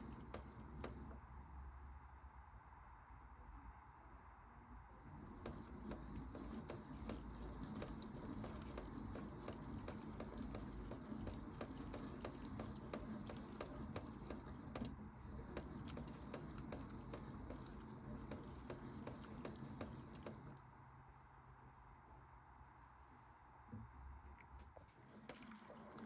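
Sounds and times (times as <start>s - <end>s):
water sloshing: 5.1s - 20.6s, 24.4s - 26.0s
toy washing machine drum turning: 5.2s - 20.5s.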